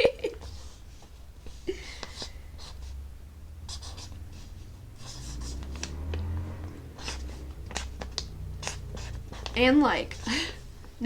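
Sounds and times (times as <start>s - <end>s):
low steady hum: 0.0s - 11.0s
pen scratching on paper: 2.1s - 2.9s, 3.6s - 10.3s.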